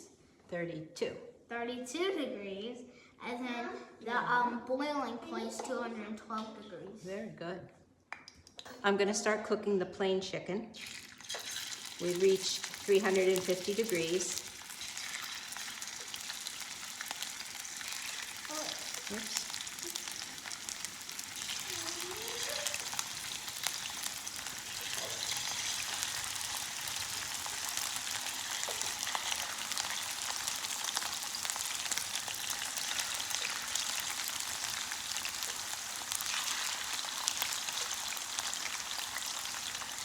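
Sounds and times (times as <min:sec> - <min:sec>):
chicken frying in fat: 0:10.8 - 0:40.0.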